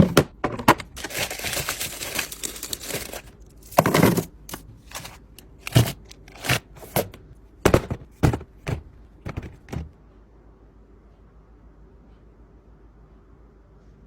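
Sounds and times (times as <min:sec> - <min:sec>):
objects knocking and clattering: 0:00.0 - 0:10.0.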